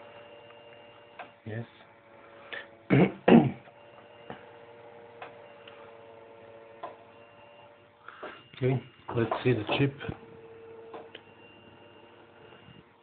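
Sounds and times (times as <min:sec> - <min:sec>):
faint hum: 0:00.0 - 0:13.0.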